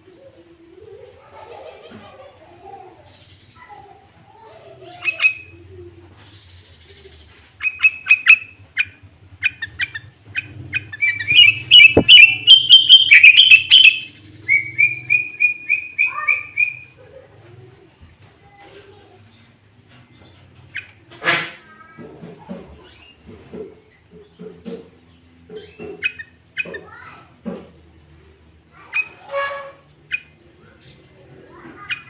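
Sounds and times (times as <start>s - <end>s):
bird singing: 6.3s - 17.0s.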